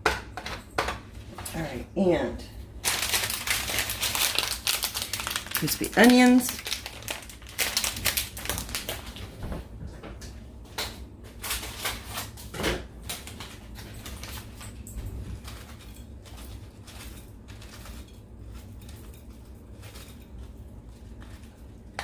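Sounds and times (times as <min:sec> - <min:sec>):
plastic packet crinkling: 0:02.8 - 0:09.3, 0:13.1 - 0:18.4.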